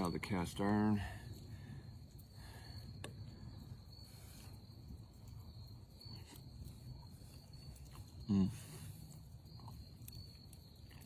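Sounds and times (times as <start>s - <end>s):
crickets chirring: 0.0s - 11.0s.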